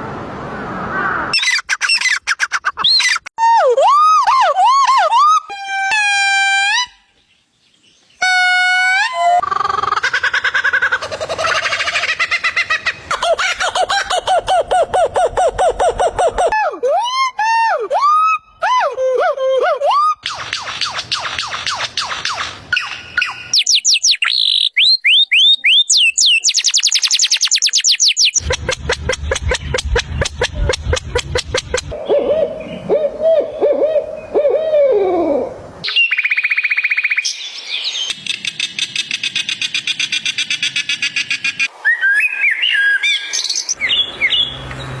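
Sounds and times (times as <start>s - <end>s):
bird-like whistles and chirps: 19.9s - 28.5s, 35.8s - 38.6s, 41.4s - 44.6s.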